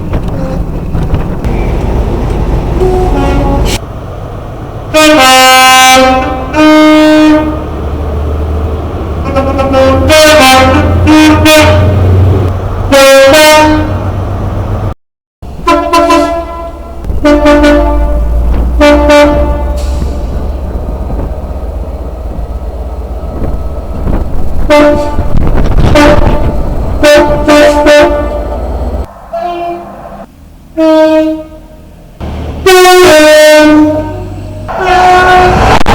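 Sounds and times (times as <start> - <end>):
diesel engine rumble: 0.0 - 30.8, 31.5 - 33.1
two-tone train air horns: 2.8 - 3.8, 4.9 - 7.6, 9.2 - 12.3, 12.9 - 14.0, 15.6 - 20.4, 24.7 - 30.2, 30.8 - 31.9, 32.6 - 35.9.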